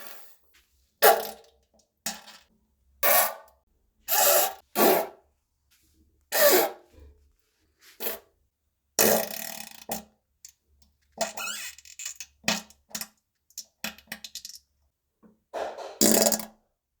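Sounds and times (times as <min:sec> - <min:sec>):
farts: 0:16.0 - 0:16.5.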